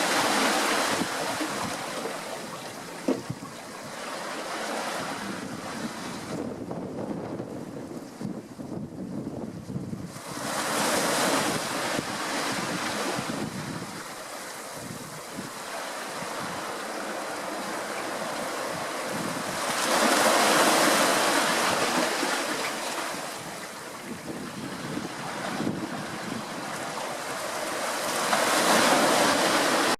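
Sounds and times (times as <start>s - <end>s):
sea waves washing in: 0.0s - 29.9s.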